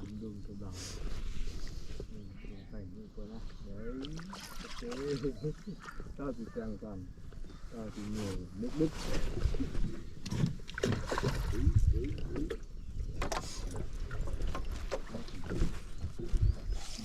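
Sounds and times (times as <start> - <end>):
wooden boat knocking and creaking: 9.4 - 16.7.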